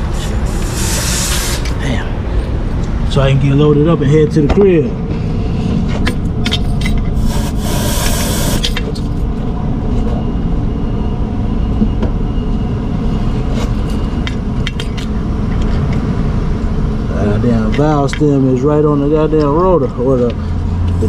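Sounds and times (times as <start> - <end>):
short air hiss: 0.4 - 1.8, 7.2 - 8.8.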